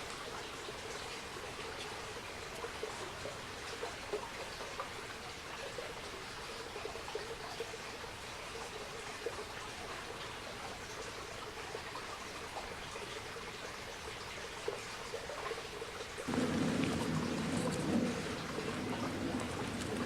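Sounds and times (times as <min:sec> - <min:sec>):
wood fire crackling and popping: 0:16.3 - 0:20.0.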